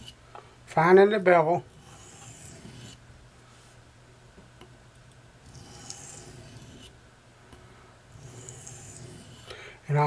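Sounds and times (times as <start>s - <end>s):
knife scraping on oilstone: 1.7s - 3.0s, 5.4s - 6.9s, 8.1s - 9.5s.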